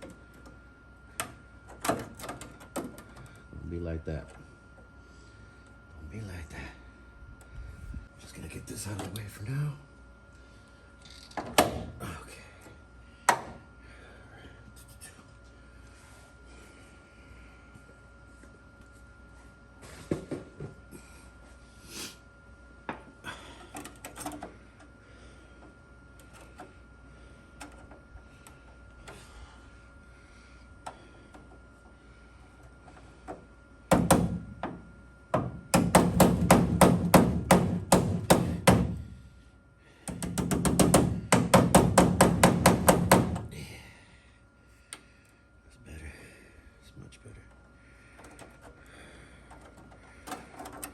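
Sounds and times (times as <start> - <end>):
rapid hammer strikes on metal: 33.9 - 39.0, 40.0 - 43.5.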